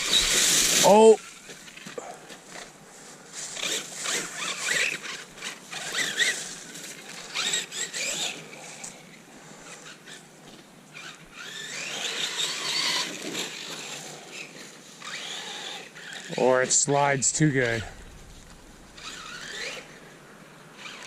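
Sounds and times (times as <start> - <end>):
toy car electric motor whining: 0.0 - 2.6, 3.5 - 9.0, 10.9 - 16.4, 19.0 - 20.0, 20.8 - 21.0.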